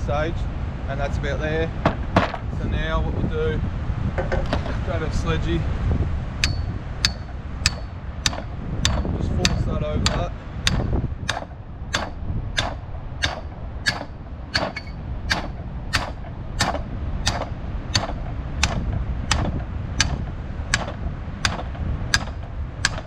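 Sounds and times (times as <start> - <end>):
steady low rumble: 0.0 - 23.0
sledgehammer striking metal tube: 6.4 - 23.0.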